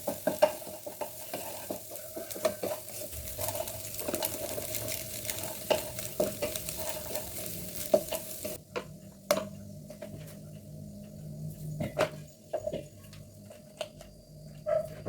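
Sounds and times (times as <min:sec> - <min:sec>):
food sizzling in a frying pan: 0:00.0 - 0:08.6.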